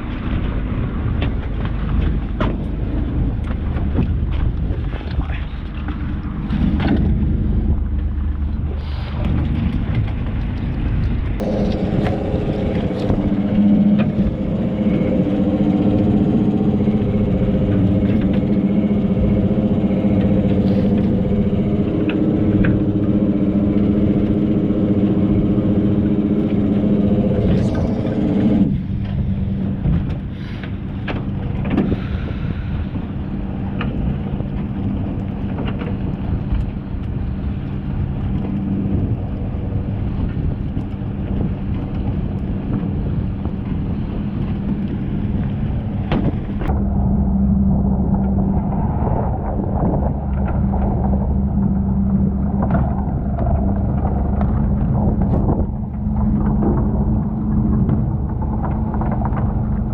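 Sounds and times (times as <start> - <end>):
boat engine running: 0.0 - 59.9.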